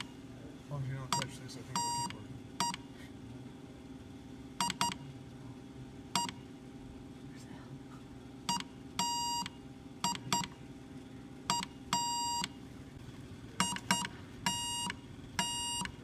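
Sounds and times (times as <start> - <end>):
low steady hum: 0.0 - 16.0
morse code buzzer beeps: 1.0 - 2.9, 4.6 - 5.0, 6.1 - 6.4, 8.5 - 10.6, 11.5 - 12.6, 13.6 - 16.0.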